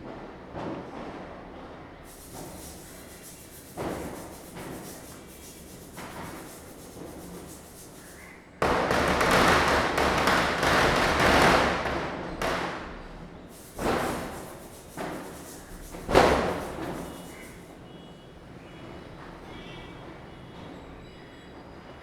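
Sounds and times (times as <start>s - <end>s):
firecrackers bursting: 8.6s - 11.3s.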